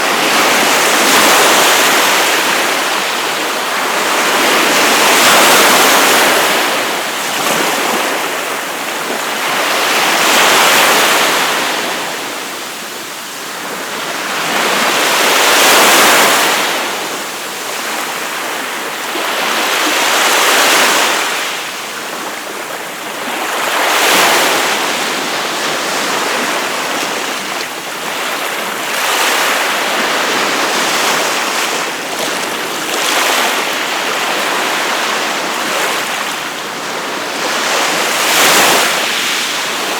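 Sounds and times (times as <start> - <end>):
ocean waves breaking on beach: 0.0 - 39.9.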